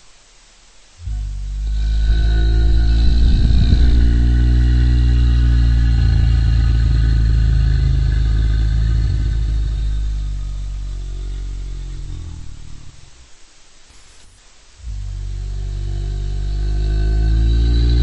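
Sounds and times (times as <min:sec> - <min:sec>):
deep growling roar: 0:01.0 - 0:13.2, 0:14.8 - 0:18.0.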